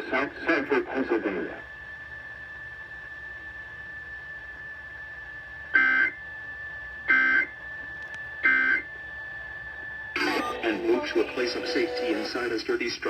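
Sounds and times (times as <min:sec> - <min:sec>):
digital data bursts: 0:10.2 - 0:12.6.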